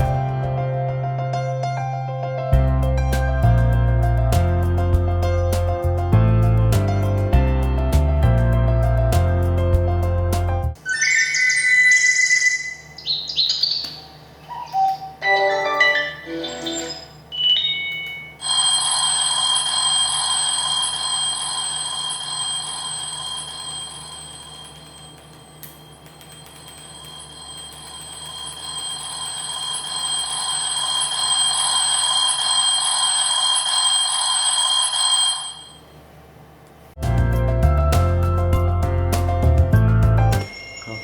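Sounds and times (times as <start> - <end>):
electronic bell-ringing alarm: 10.9 - 13.6, 15.2 - 35.9, 40.4 - 41.0
short chime notes: 40.4 - 41.0.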